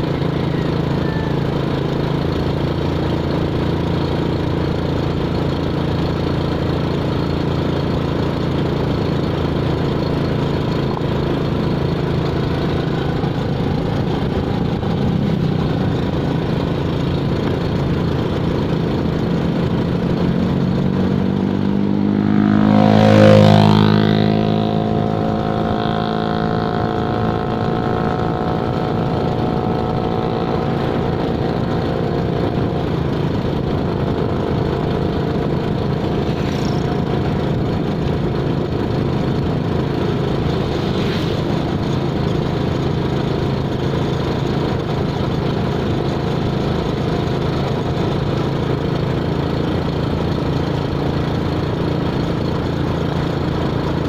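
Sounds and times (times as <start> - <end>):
vehicle engine running: 0.0 - 54.0
vehicle passing by: 21.1 - 28.4, 36.0 - 37.5, 39.8 - 42.6.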